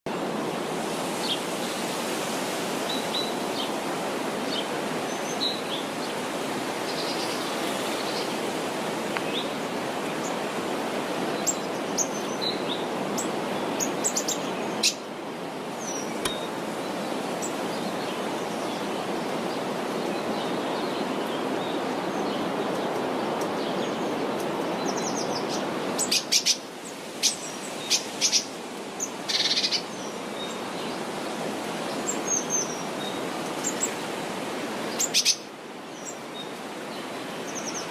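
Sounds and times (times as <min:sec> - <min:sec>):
small birds chirping: 0:11.3 - 0:15.0.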